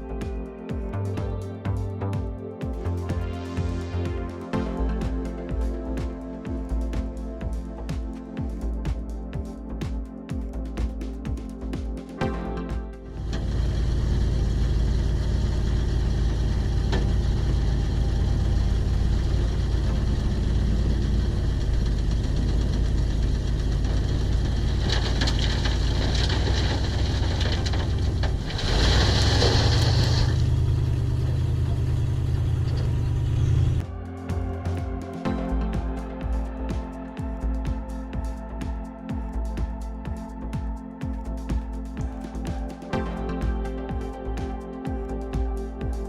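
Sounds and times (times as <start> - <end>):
excavator diesel engine running: 13.2 - 33.8.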